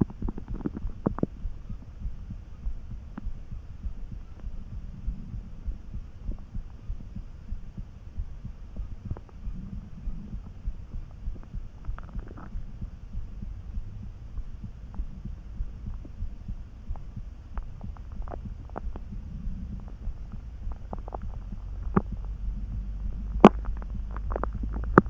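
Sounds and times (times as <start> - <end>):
stomach gurgles: 0.0 - 1.6, 11.3 - 12.7, 17.6 - 25.0
stomach rumbling: 0.0 - 25.0.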